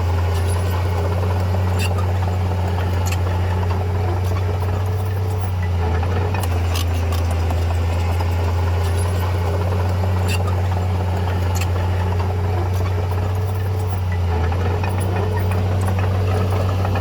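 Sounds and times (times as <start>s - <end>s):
heavy diesel engine running: 0.0s - 17.0s.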